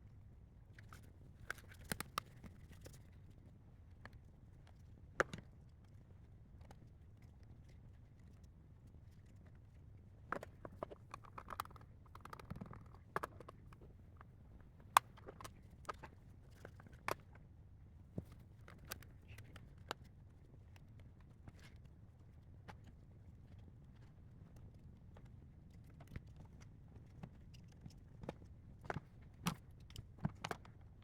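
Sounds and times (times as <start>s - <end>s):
plastic parts clicking and knocking: 10.4s - 17.2s.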